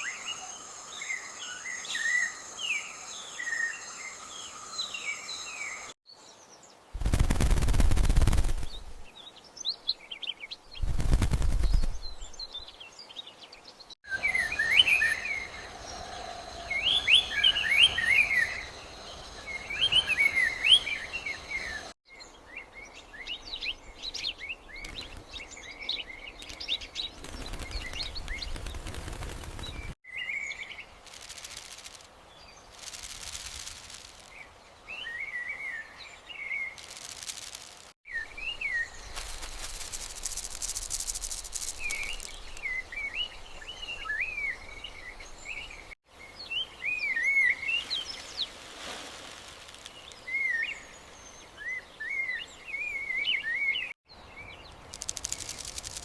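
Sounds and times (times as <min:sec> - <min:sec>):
small birds chirping and singing: 0:08.1 - 0:37.5, 0:40.4 - 0:48.6, 0:49.6 - 0:56.0
high insect buzz: 0:31.0 - 0:34.4, 0:36.8 - 0:37.9, 0:39.0 - 0:42.8, 0:54.8 - 0:56.0.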